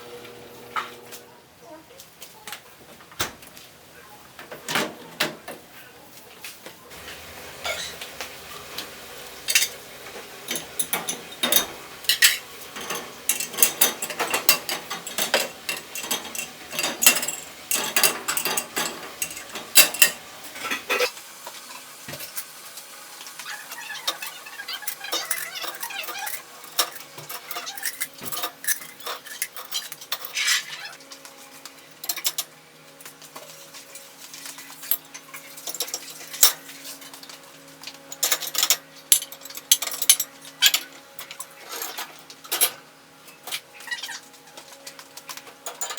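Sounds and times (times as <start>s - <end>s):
cutlery and dishes clinking: 8.8s - 21.1s, 23.8s - 30.9s, 32.0s - 32.5s, 33.4s - 45.9s.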